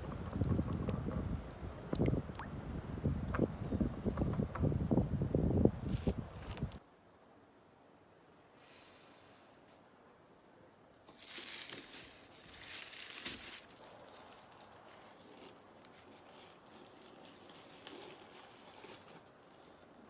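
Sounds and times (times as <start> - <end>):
rustling and crinkling: 0.0 - 6.8, 11.0 - 20.0.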